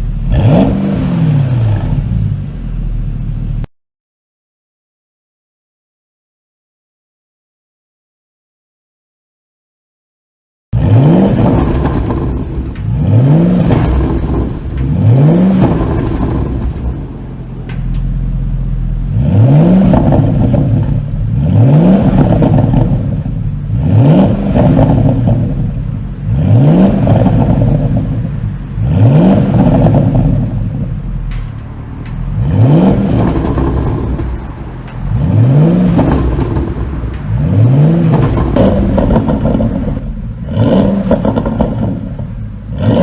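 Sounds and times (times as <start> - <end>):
car engine revving: 0.0 - 3.7, 10.8 - 43.0.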